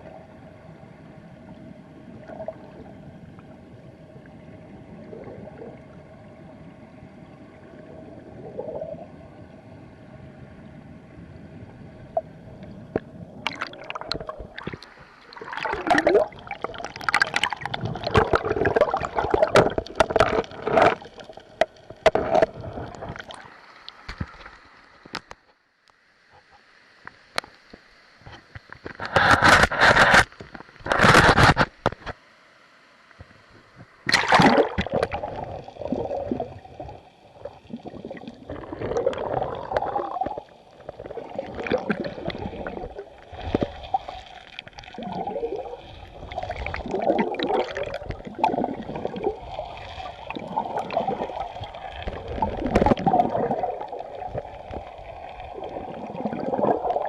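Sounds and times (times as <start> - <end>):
river gurgling underwater: 4.7 - 6.6, 7.4 - 9.4, 11.6 - 23.8, 34.0 - 57.0.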